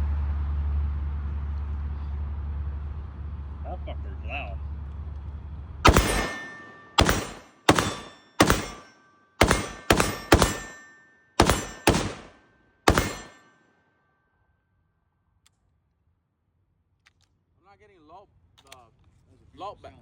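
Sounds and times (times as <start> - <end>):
gunshots: 5.9 - 13.5.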